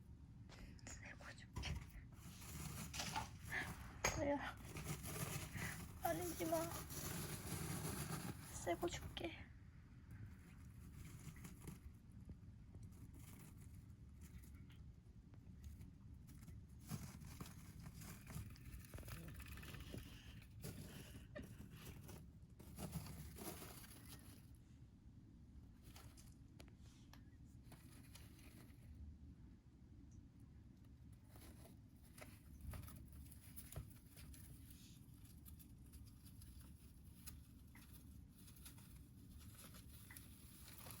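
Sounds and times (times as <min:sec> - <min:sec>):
faint rustling: 0:00.5 - 0:41.0
hamster scratching and clicking: 0:04.6 - 0:09.0, 0:10.3 - 0:24.4, 0:30.8 - 0:41.0.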